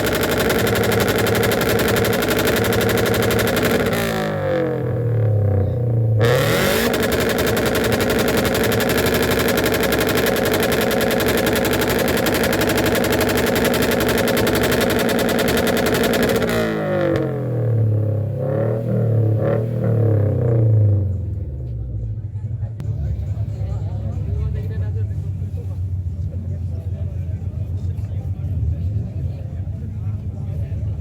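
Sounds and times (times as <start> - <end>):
motorcycle engine revving: 0.0 - 21.8.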